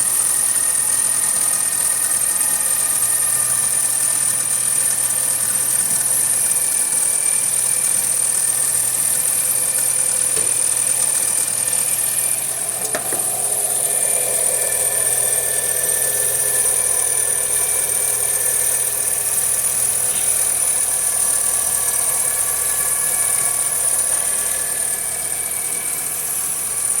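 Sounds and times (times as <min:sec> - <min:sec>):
car engine running: 0:00.0 - 0:27.0
high-pitched squeal: 0:06.6 - 0:27.0.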